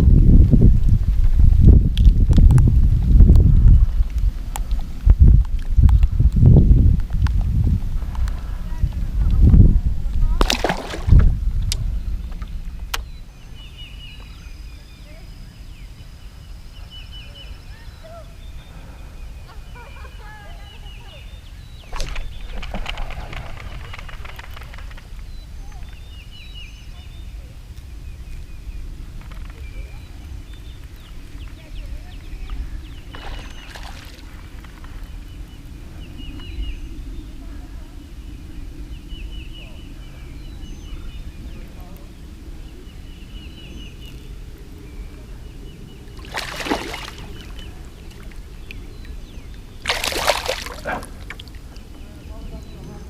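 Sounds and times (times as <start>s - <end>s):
steady low rumble: 0.0s - 53.0s
small birds chirping: 3.4s - 53.0s
water splashing: 10.3s - 11.4s, 21.9s - 24.7s, 33.1s - 34.5s, 46.2s - 48.8s, 49.7s - 51.6s.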